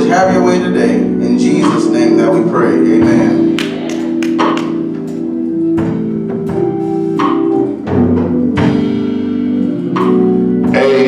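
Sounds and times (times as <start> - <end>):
keyboard chords: 0.0 - 11.0
drum and cymbal hits: 3.0 - 11.0.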